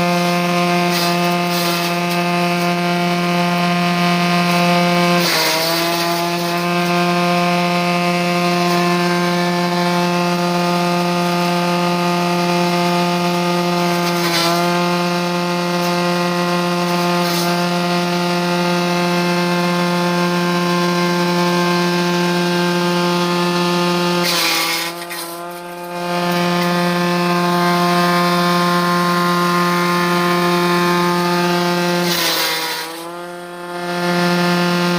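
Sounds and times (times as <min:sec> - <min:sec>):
electric grass chopper humming: 0:00.0 - 0:34.9.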